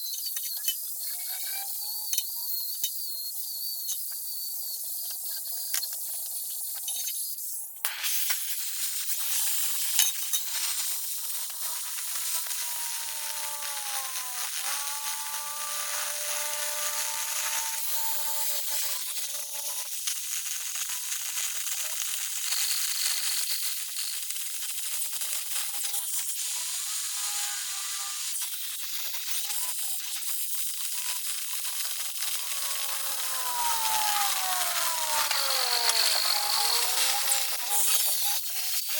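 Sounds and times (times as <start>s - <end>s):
electric welding arc hissing: 7.9s - 38.9s.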